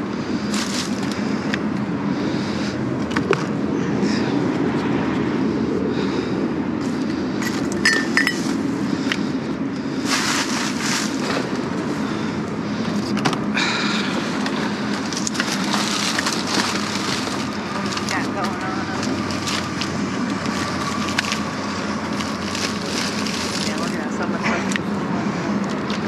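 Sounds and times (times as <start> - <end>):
steady low rumble: 0.0 - 26.0
clinks and knocks: 7.4 - 8.5
glass ringing: 7.8 - 8.5
rustling: 10.0 - 11.6, 14.4 - 24.0.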